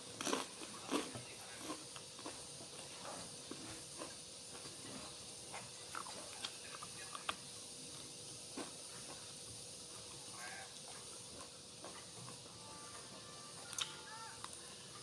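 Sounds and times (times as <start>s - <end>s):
person chewing food: 0.0s - 9.2s
steady hiss: 0.0s - 15.0s.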